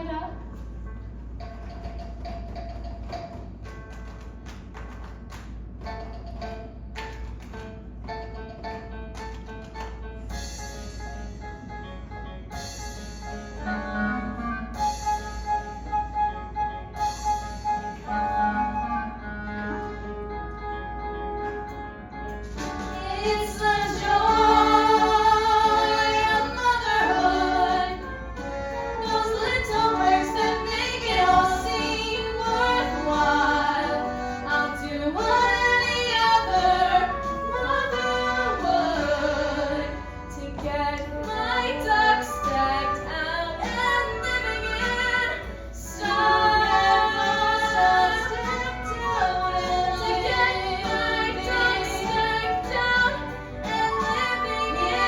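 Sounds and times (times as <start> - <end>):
woman singing with music: 0.0 - 0.8, 12.6 - 55.0.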